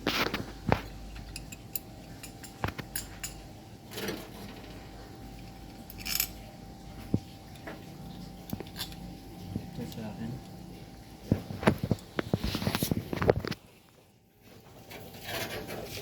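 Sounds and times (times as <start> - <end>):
metal tools clinking: 5.4 - 6.4
scraping rustles: 11.3 - 13.8, 14.4 - 16.0.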